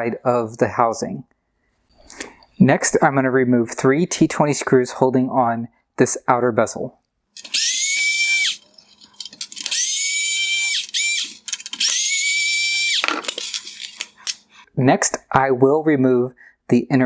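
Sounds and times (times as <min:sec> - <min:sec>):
power driver whirring: 0:07.4 - 0:14.4
light clicks of screws and parts: 0:07.4 - 0:14.5.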